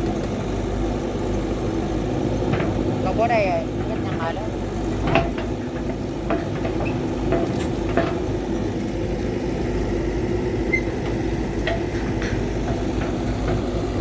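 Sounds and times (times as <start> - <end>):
diesel machinery rumbling: 0.0 - 14.0
clicks and clanks: 3.8 - 9.9, 10.7 - 13.8.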